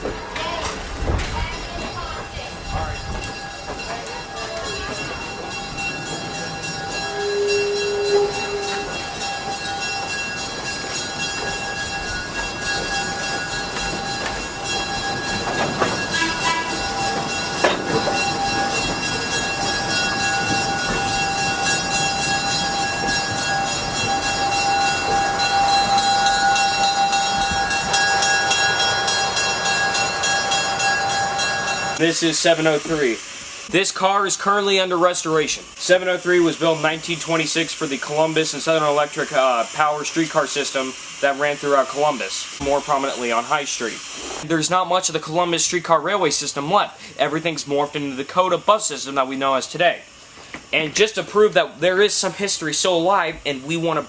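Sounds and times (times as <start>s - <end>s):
diesel train rumbling: 0.0s - 54.0s
sharp metal clanks: 12.6s - 24.2s.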